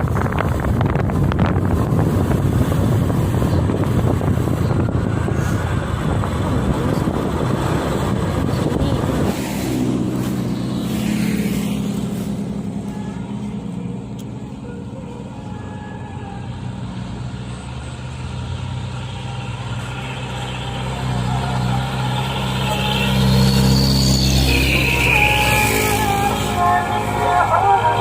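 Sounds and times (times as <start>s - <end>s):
wind buffeting microphone: 0.0s - 12.7s
truck engine running: 0.0s - 28.0s.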